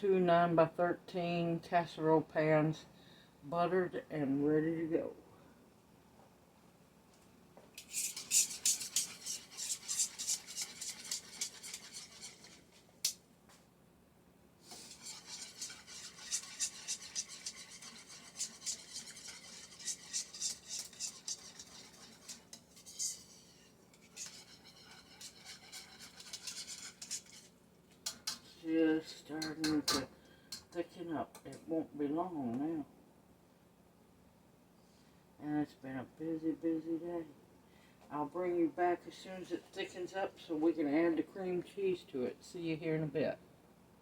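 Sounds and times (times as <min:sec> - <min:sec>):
utensil scraping metal pot: 0:07.8 - 0:13.2, 0:14.6 - 0:30.7.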